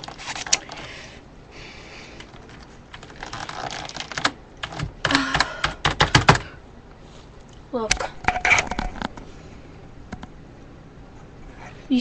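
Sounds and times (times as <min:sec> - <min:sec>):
keyboard keys clicking: 0:02.2 - 0:06.4.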